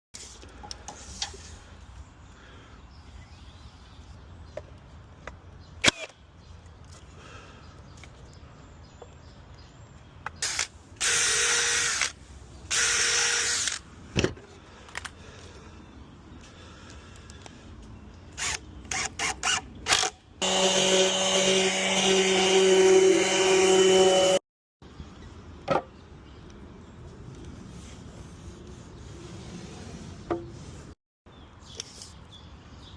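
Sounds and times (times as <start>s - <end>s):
power tool motor running: 18.4s - 24.4s.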